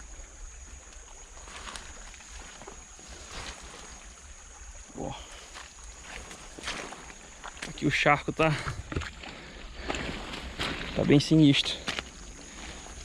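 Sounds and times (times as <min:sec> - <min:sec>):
high insect drone: 0:00.0 - 0:13.0
footsteps through mud: 0:00.6 - 0:04.1, 0:05.2 - 0:13.0.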